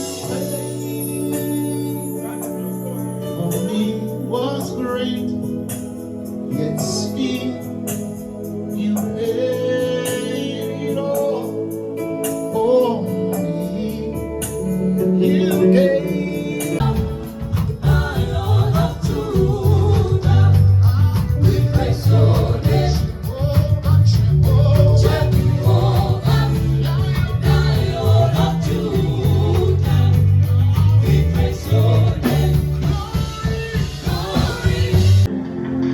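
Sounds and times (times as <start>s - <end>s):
keyboard chords: 0.0s - 35.9s
person singing: 12.4s - 35.4s
drum and bass beat: 16.8s - 35.3s.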